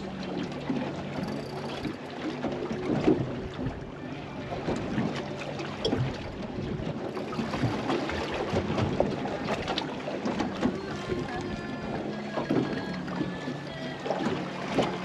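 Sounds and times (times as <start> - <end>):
water lapping against boat hull: 0.0 - 15.0.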